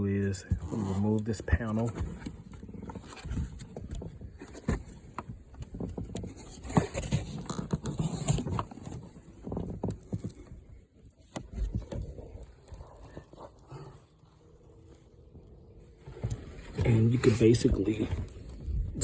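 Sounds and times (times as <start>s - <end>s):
plastic panel clicks and scraping: 0.5s - 13.6s.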